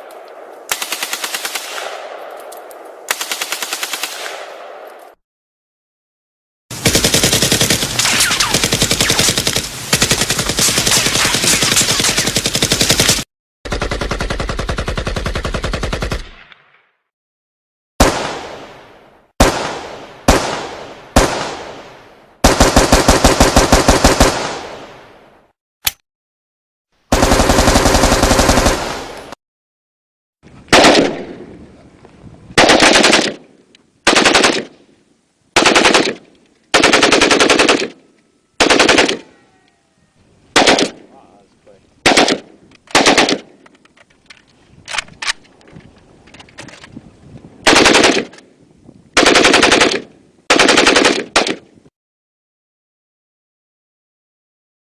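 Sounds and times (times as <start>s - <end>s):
rifle full-auto bursts: 22.4s - 24.6s, 27.1s - 29.2s, 34.1s - 34.7s, 35.6s - 38.0s, 38.6s - 39.2s, 42.0s - 43.4s, 47.7s - 48.2s, 49.2s - 51.6s
rifle single shots: 42.0s - 43.5s.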